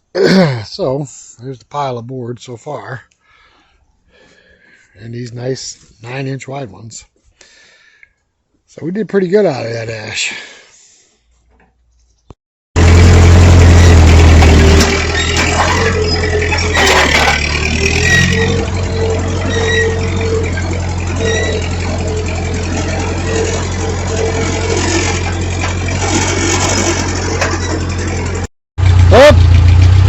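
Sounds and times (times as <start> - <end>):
tractor engine running: 12.8 - 30.0.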